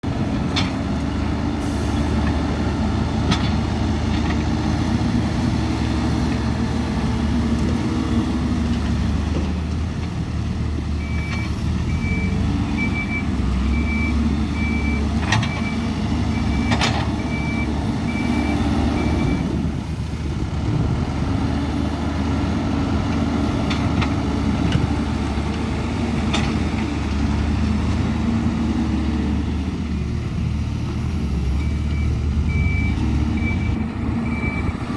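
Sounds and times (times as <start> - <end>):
backhoe diesel engine running: 0.0 - 34.9
reversing alarm beeping: 11.0 - 19.5, 31.6 - 34.9.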